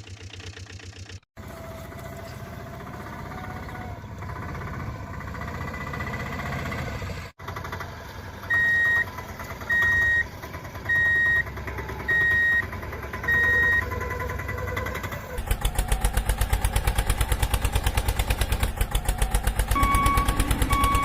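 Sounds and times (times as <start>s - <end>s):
vehicle engine running: 0.0s - 21.0s
reversing alarm beeps: 8.5s - 9.1s, 9.7s - 10.3s, 10.9s - 11.5s, 12.1s - 13.9s, 19.7s - 21.0s.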